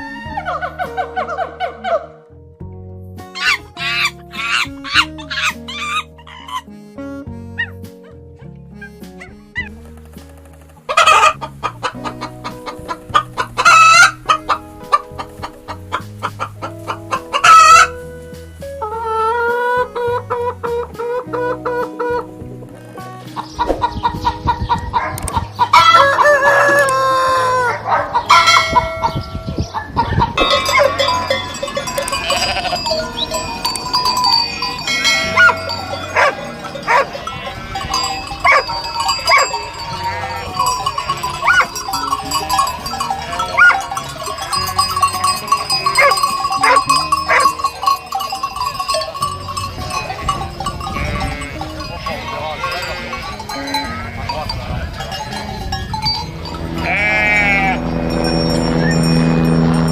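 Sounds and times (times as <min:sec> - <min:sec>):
background music: 0:00.0 - 0:59.9
farm animals calling: 0:03.3 - 0:09.9, 0:10.6 - 0:18.0, 0:18.8 - 0:59.9
rooster crowing: 0:25.8 - 0:28.6.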